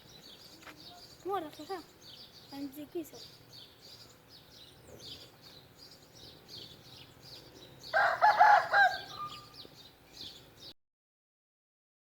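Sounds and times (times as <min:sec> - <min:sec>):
small birds chirping: 0:00.0 - 0:10.8
rooster crowing: 0:07.9 - 0:09.6.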